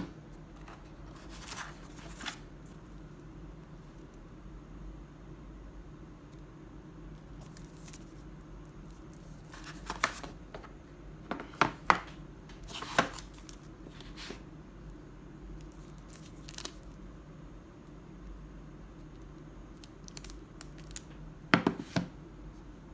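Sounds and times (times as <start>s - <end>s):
low steady hum: 0.0s - 22.9s.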